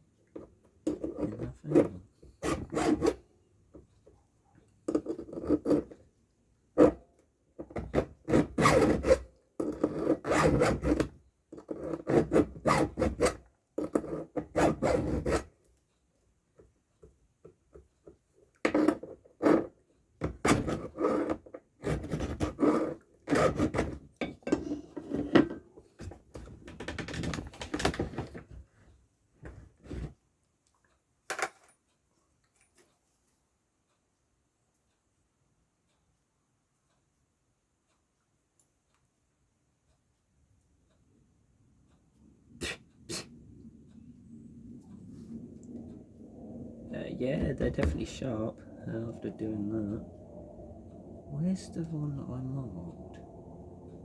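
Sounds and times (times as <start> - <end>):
file rasping on chainsaw chain: 0.9 - 3.2, 5.0 - 6.0, 7.9 - 15.5, 20.5 - 23.9.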